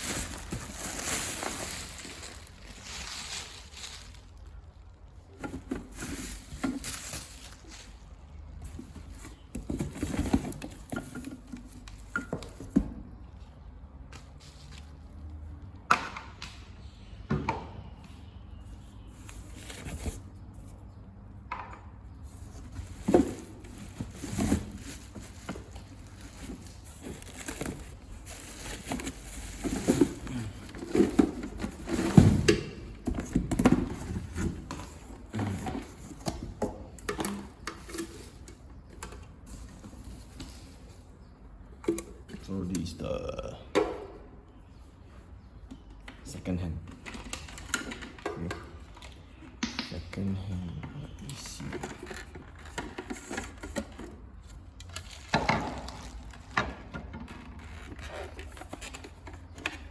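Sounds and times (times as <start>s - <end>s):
packaging rustling: 0.0s - 11.2s, 22.6s - 32.4s.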